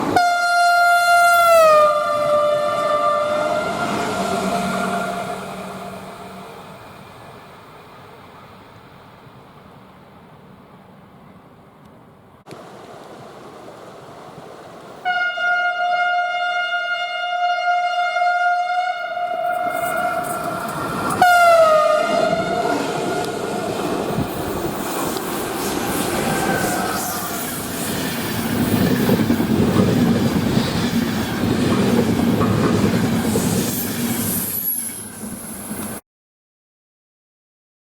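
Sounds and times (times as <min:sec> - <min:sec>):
train air horn: 0:00.2 - 0:06.6, 0:15.0 - 0:23.5
train wheels rumbling: 0:19.1 - 0:36.0.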